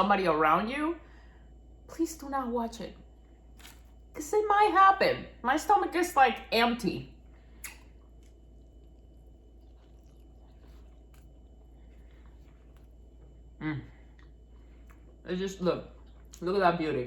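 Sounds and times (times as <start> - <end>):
person chewing food: 7.2 - 16.4.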